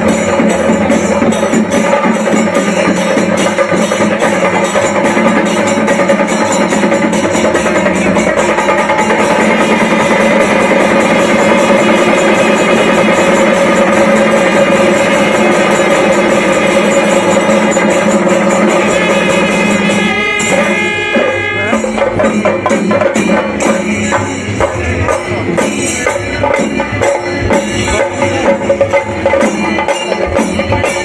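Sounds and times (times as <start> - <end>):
jingling percussion: 0.0 - 31.0
sharp rhythmic drum strikes: 0.0 - 31.0
loud music: 12.6 - 22.6
sustained tones: 18.5 - 22.2.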